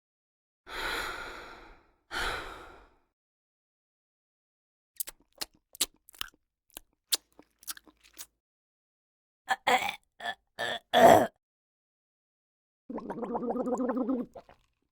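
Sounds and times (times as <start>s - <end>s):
woman chewing crunchy food: 5.0s - 8.3s.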